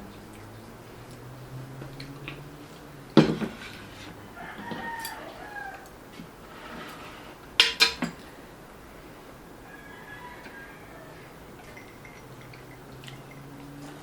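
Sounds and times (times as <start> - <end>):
dishes and utensils clattering: 3.2 - 5.4, 6.6 - 8.4, 11.6 - 13.9
rooster crowing: 4.0 - 6.0, 9.6 - 12.4.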